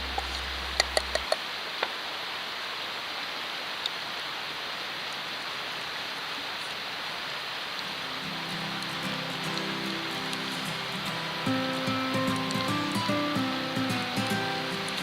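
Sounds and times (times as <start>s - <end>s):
wood fire crackling and popping: 7.8s - 15.0s.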